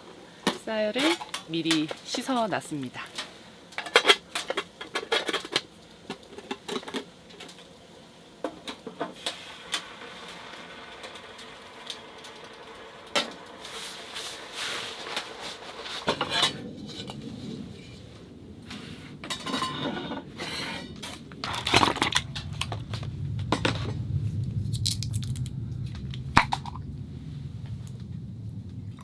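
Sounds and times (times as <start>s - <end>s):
soft hiss: 0.0s - 19.6s
faint steady hum: 0.0s - 29.0s.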